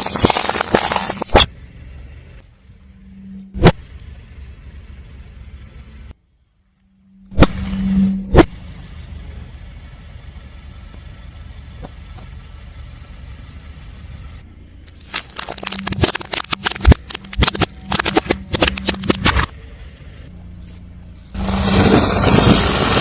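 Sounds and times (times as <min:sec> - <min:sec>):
sharp cracks and crackles: 0:00.0 - 0:01.5, 0:14.9 - 0:19.5
tyre crushing crunchy objects: 0:00.0 - 0:01.5, 0:14.9 - 0:19.5
car engine running: 0:00.0 - 0:23.0.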